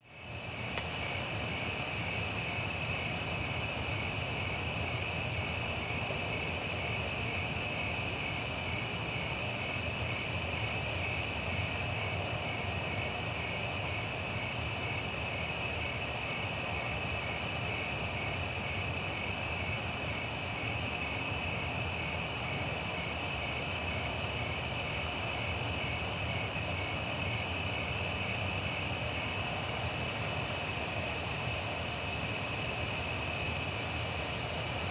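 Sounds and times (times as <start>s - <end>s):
crickets chirping: 0.0s - 34.9s.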